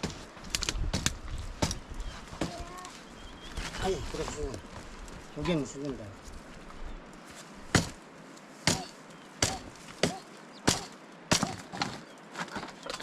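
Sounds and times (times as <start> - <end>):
sharp chopping strikes: 7.7 - 8.0, 8.6 - 12.0.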